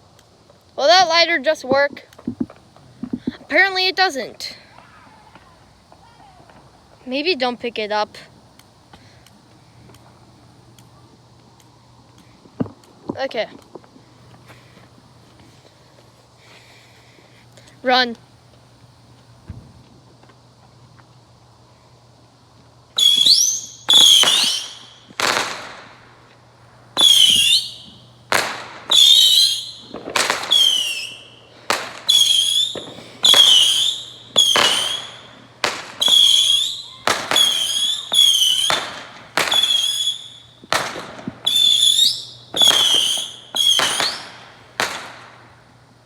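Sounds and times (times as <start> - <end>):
whistling firework shots: 4.4 - 7.0, 23.0 - 26.3, 26.9 - 45.6.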